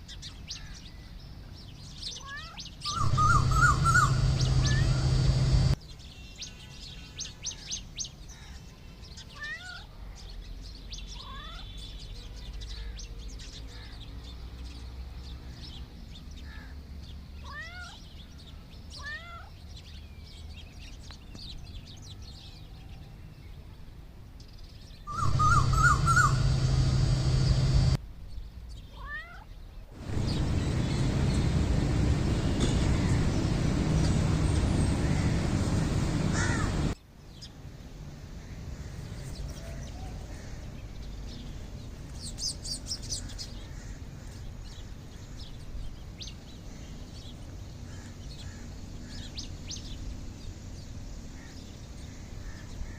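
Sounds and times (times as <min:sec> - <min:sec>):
small birds chirping: 0:00.0 - 0:23.6, 0:24.4 - 0:37.8, 0:38.4 - 0:52.9
steady hum: 0:03.0 - 0:05.8, 0:25.1 - 0:28.0, 0:30.0 - 0:37.0
steady rushing noise: 0:03.0 - 0:05.8, 0:25.1 - 0:28.0, 0:30.0 - 0:37.0.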